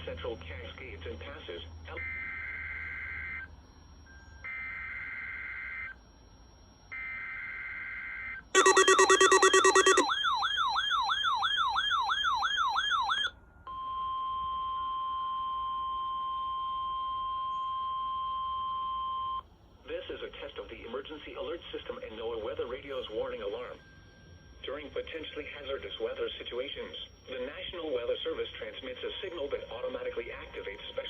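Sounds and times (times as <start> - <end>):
pulsing alert buzz: 8.6 - 10.1
steady alarm tone: 8.6 - 10.1
warbling data bursts: 8.6 - 10.1
warbling siren: 8.6 - 10.2.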